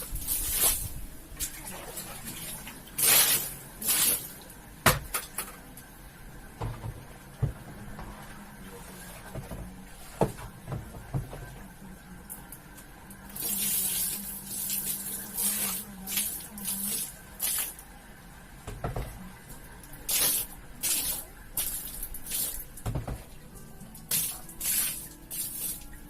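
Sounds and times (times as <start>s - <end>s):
water spraying onto carpet: 0.0s - 1.0s, 3.0s - 4.4s, 13.3s - 17.8s, 20.1s - 22.8s, 24.1s - 25.9s
faint steady hum: 0.0s - 26.0s.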